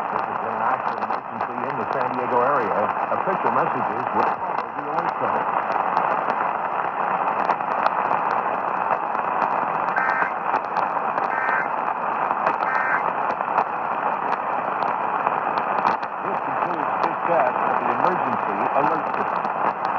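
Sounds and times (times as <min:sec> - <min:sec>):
radio hiss and static crackle: 0:00.0 - 0:19.9
faint two-tone data bursts: 0:09.9 - 0:10.4, 0:11.2 - 0:11.7, 0:12.6 - 0:13.1.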